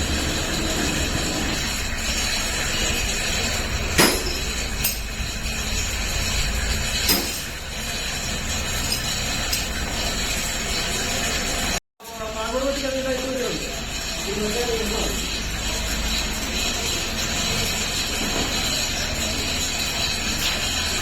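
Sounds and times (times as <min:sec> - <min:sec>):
workshop noise: 0:00.0 - 0:21.0
sharp metallic knocks: 0:03.9 - 0:05.3, 0:06.9 - 0:07.6.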